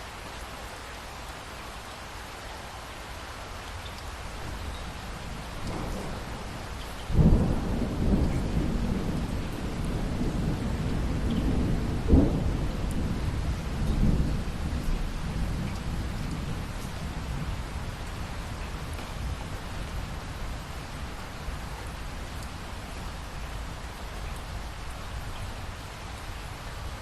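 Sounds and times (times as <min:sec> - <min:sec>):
steady rain: 0:00.0 - 0:27.0
thunder cracking and rumbling: 0:05.3 - 0:21.2.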